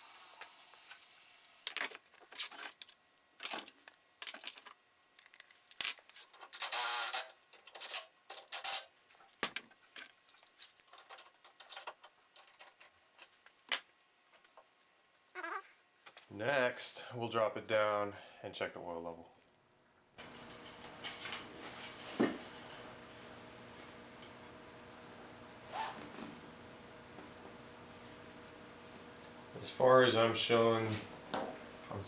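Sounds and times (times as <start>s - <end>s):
metal tools clinking: 10.2s - 13.4s.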